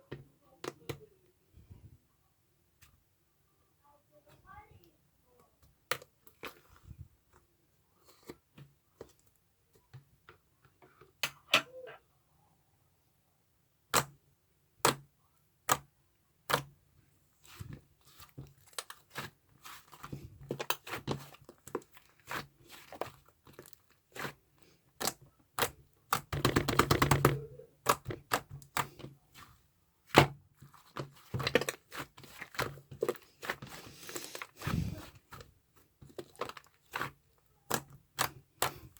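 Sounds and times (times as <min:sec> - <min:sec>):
crinkling: 0:27.9 - 0:38.9.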